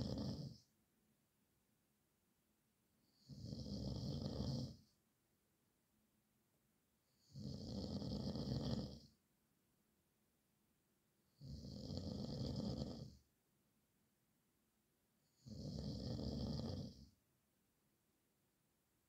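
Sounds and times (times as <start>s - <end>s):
man snoring: 0.0s - 0.6s, 3.1s - 4.8s, 7.2s - 9.1s, 11.4s - 13.2s, 15.4s - 17.1s.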